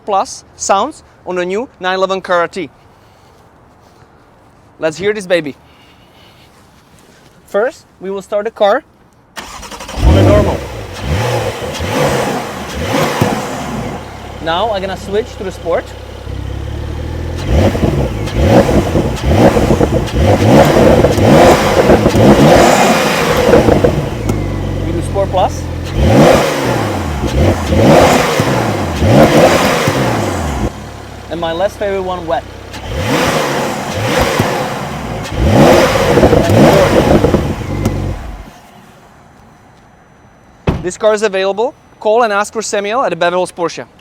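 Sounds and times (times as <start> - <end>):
car engine idling and revving: 9.4 - 38.8.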